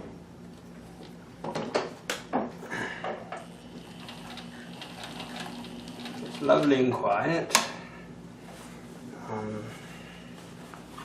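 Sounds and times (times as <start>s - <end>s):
sewing machine motor hum: 3.5s - 6.8s.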